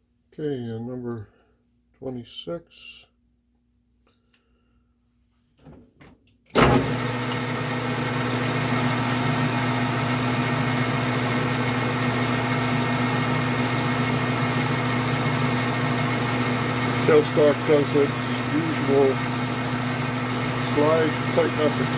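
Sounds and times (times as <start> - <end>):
metal lathe motor humming: 7.0 - 21.9.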